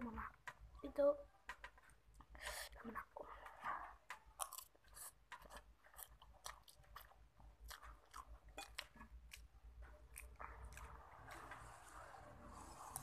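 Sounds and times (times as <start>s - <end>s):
chewing with wet mouth clicks: 4.1s - 11.5s.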